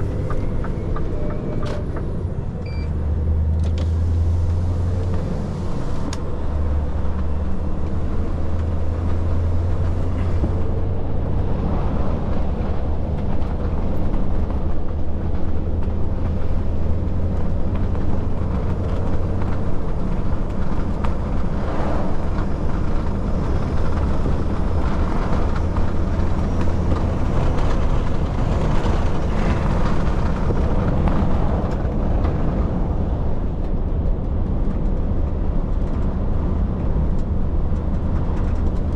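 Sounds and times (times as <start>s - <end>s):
road and tyre noise: 0.0s - 38.9s
truck engine driving: 0.0s - 38.9s.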